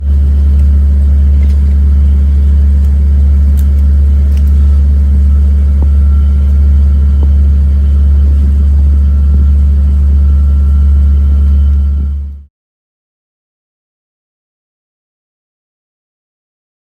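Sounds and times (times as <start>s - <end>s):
loud low rumbling drone: 0.0s - 12.5s.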